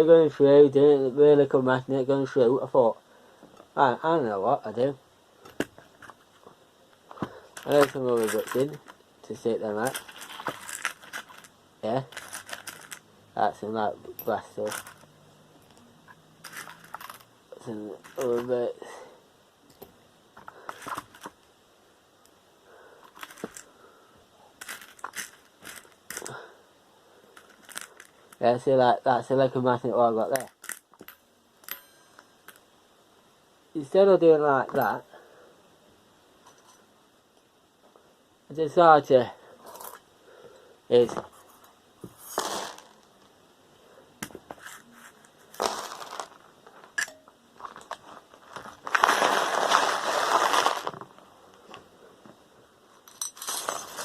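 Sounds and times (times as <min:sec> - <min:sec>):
screws clattering and clinking: 0:07.5 - 0:09.0, 0:09.7 - 0:13.1, 0:14.0 - 0:18.6, 0:19.7 - 0:21.4, 0:23.0 - 0:23.7, 0:24.6 - 0:26.4, 0:27.4 - 0:28.4, 0:30.3 - 0:32.7, 0:36.4 - 0:36.9, 0:44.6 - 0:48.0, 0:52.9 - 0:54.0
metal screws rattling: 0:07.6 - 0:09.0, 0:09.8 - 0:11.5, 0:12.1 - 0:13.0, 0:14.2 - 0:15.1, 0:16.4 - 0:17.3, 0:24.6 - 0:26.4, 0:27.4 - 0:28.2.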